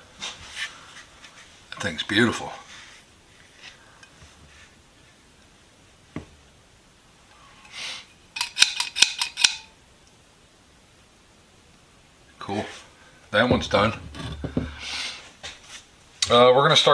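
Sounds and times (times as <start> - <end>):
small metal parts clinking: 8.4 - 9.7.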